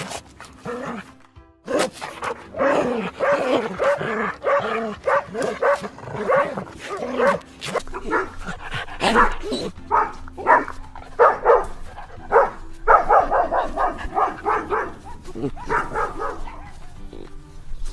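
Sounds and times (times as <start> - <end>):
dog barking: 1.7 - 17.3.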